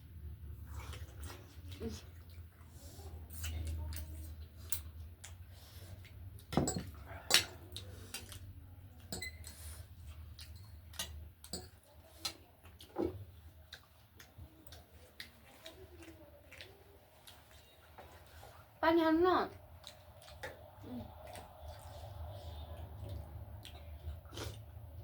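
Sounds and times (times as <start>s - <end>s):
faint low hum: 0.0s - 25.0s
utensils clinking on plates: 6.5s - 7.6s, 9.1s - 9.6s.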